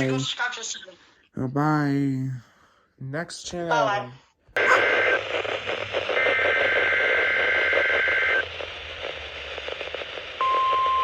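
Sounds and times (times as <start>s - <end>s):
radio static hiss: 0.0s - 0.9s, 4.6s - 11.0s
weather radio alarm tone: 4.6s - 5.3s.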